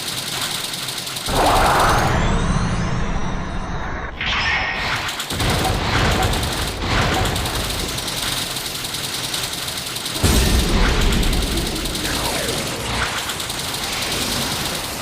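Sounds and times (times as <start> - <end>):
crackling booms and gunfire: 5.0 - 15.0.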